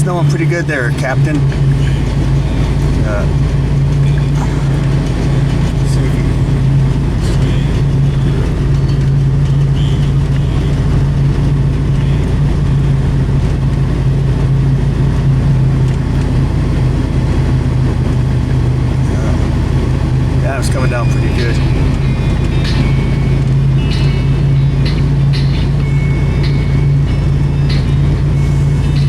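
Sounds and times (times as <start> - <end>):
truck engine and road noise: 0.0 - 29.0.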